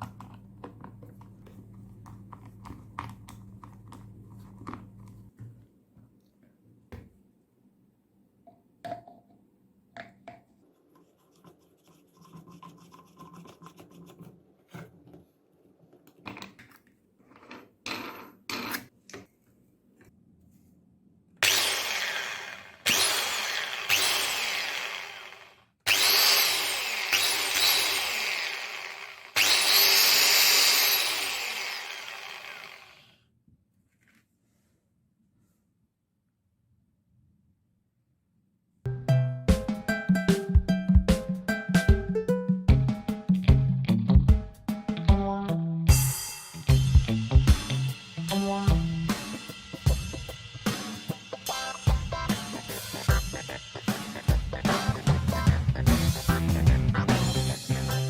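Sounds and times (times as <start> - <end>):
angle grinder motor running: 21.4 - 33.2.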